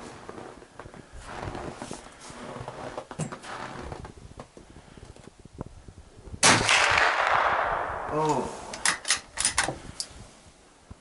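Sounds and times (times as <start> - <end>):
quiet rustling: 0.0 - 5.4
rifle shot echoing: 6.4 - 9.0.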